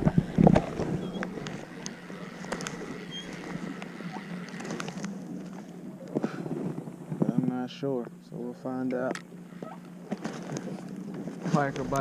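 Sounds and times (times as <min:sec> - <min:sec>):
boat low hum: 0:00.0 - 0:12.0.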